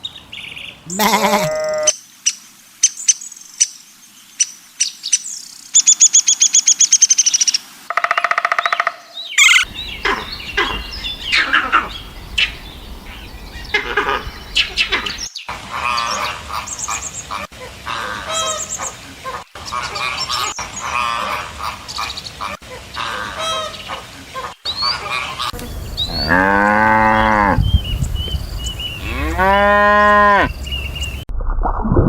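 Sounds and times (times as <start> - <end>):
birds chattering: 8.5 - 17.4, 24.7 - 31.2
cow mooing: 9.7 - 12.6, 25.6 - 28.4, 29.0 - 30.9.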